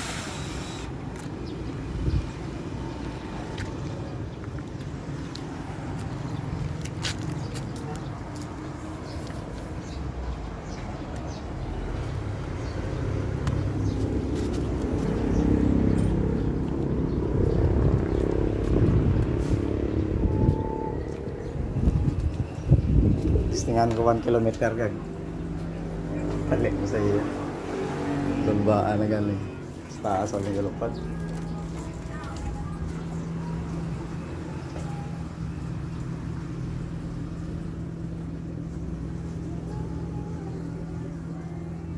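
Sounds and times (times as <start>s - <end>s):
drone propellers buzzing: 0.0s - 1.0s
wind rumble on microphone: 1.8s - 5.0s, 12.7s - 24.2s.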